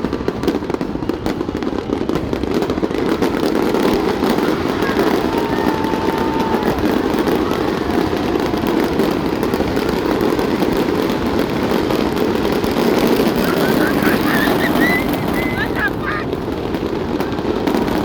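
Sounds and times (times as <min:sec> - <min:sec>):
crowd hubbub: 0:00.0 - 0:18.0
short whistle-like sounds: 0:13.5 - 0:15.8.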